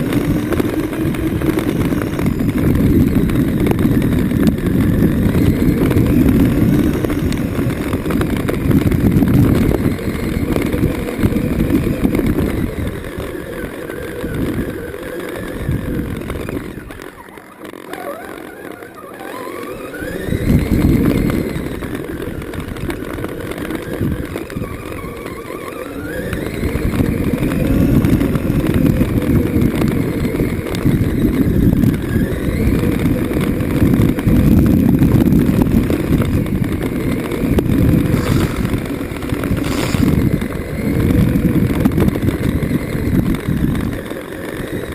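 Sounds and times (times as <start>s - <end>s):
electric motor whine: 0.0s - 44.9s
tyres rumbling over rough ground: 0.0s - 44.9s.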